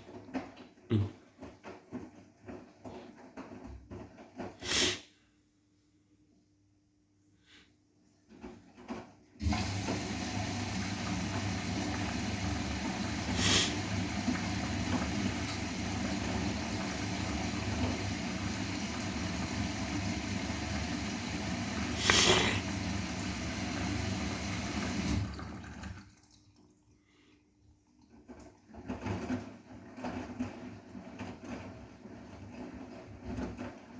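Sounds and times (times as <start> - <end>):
washing machine taking in water: 9.4 - 33.9.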